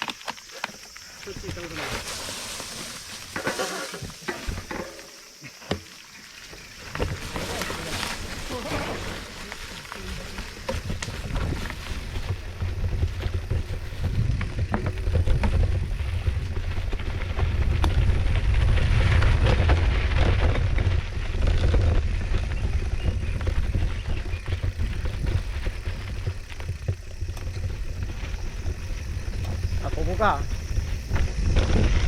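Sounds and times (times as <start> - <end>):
bike clicks and rattles: 6.6 - 32.0
wind rumble on microphone: 6.9 - 32.0.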